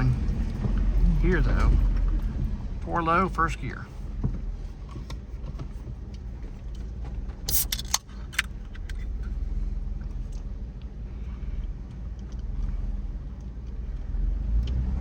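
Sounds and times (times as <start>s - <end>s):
loose things rattling in cab: 0.0s - 10.3s
engine low drone from inside cabin: 0.0s - 15.0s.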